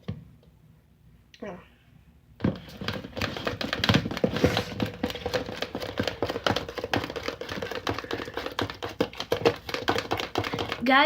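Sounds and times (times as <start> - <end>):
slime clicking and tapping: 4.8 - 10.9.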